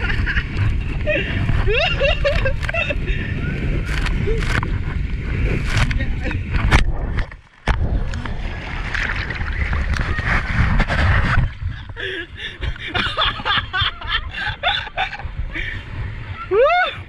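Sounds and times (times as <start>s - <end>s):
riders laughing and calling out: 0.0s - 4.5s
water splashing: 0.0s - 15.7s
wind rushing: 0.0s - 16.6s.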